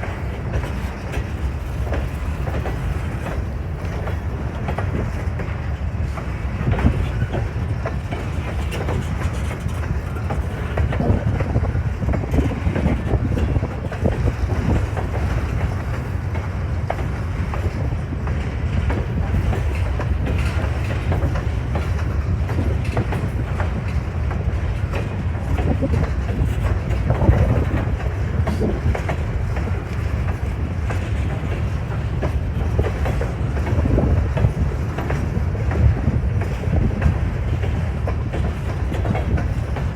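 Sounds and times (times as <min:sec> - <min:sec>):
freight train rumbling past: 0:00.0 - 0:39.9
train wheels clicking on rails: 0:00.0 - 0:39.9.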